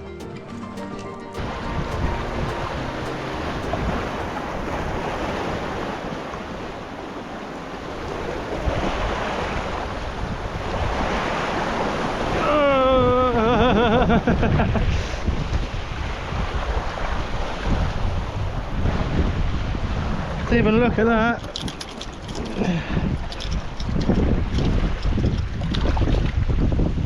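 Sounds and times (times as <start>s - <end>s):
wavering pitched sound: 0.0s - 5.6s
sea waves washing ashore: 0.0s - 27.0s
wind buffeting microphone: 1.4s - 27.0s.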